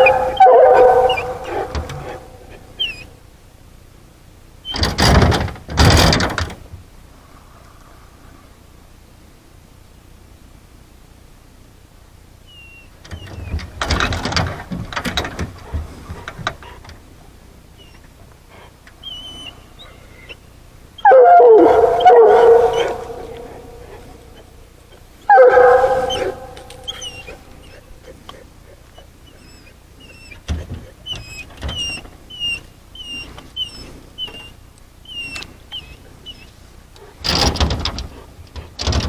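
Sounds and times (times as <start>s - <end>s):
dog howling: 0.0s - 3.2s, 21.0s - 30.4s
rustling and clattering: 4.7s - 6.9s, 13.0s - 17.2s, 30.3s - 32.2s, 37.0s - 39.0s.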